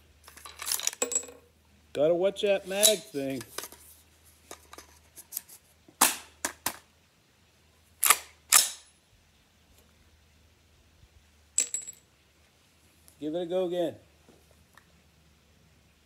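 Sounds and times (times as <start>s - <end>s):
metallic rifle action clicks: 8.0s - 8.9s.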